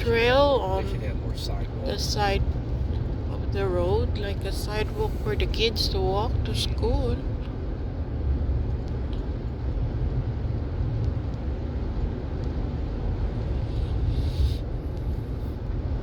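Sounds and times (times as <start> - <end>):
car road and engine noise: 0.0 - 16.0
hiss: 13.5 - 15.5.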